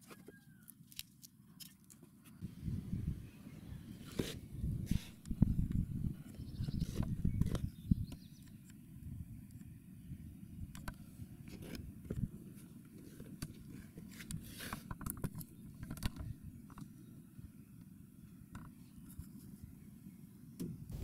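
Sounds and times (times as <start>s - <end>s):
low steady rumble: 2.4s - 8.2s
clicks and scrapes of parts: 6.6s - 7.7s, 10.8s - 16.9s.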